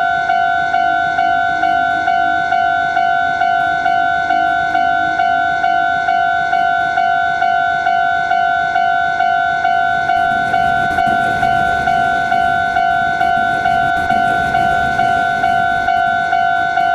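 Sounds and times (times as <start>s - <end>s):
level crossing warning bell: 0.0s - 16.9s
passing train rumble: 9.5s - 16.9s.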